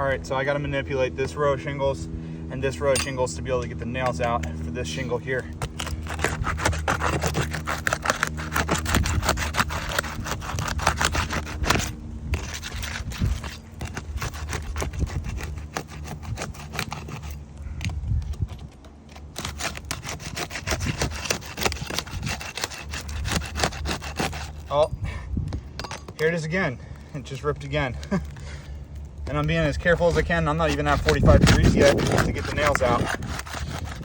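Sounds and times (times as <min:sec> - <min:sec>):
metal tool scraping shingles: 0:02.6 - 0:25.0, 0:25.9 - 0:34.0
shingles crackling and tearing: 0:04.1 - 0:24.8, 0:26.0 - 0:34.0.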